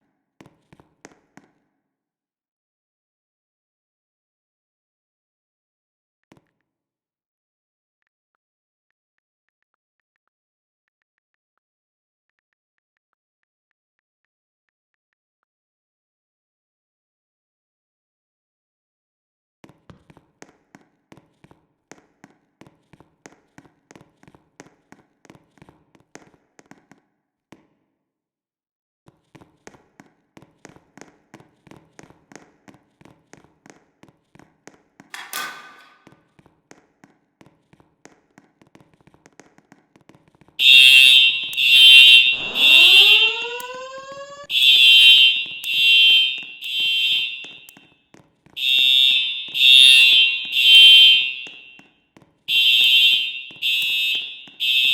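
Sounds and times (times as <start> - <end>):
fire alarm tone pulses: 40.6 - 47.8, 48.6 - 51.8, 52.5 - 54.9
rising tone: 41.0 - 44.5.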